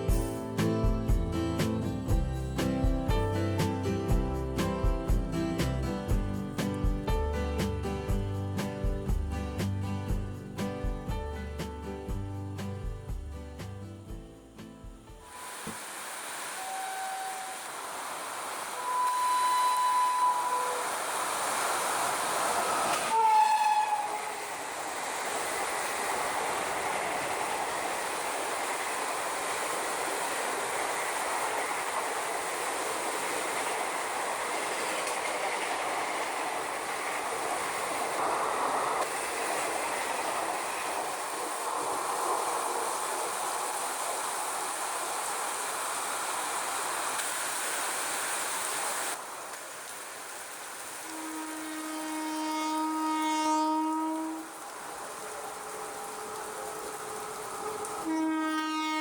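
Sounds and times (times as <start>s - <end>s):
train running past on track: 0.0s - 59.0s
train horn: 16.5s - 18.0s, 18.6s - 24.6s, 51.0s - 59.0s.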